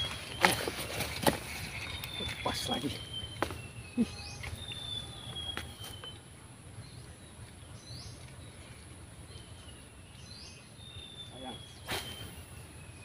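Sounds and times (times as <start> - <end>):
insects droning: 0.0 - 6.4
bird chirp: 0.0 - 13.0
bird falling whistle: 11.8 - 12.6.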